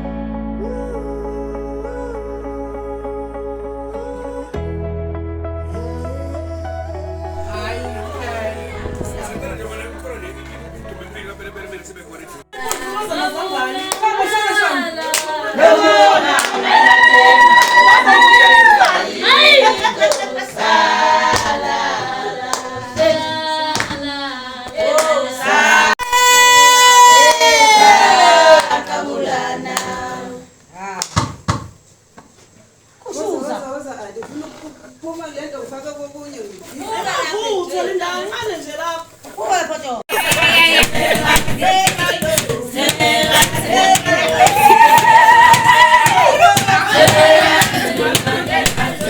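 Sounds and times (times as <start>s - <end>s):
group singing unaccompanied: 7.4s - 26.0s, 27.5s - 30.6s, 40.1s - 49.0s
sharp handclaps: 12.6s - 13.0s, 40.2s - 49.0s
sharp percussive hits: 40.1s - 49.0s.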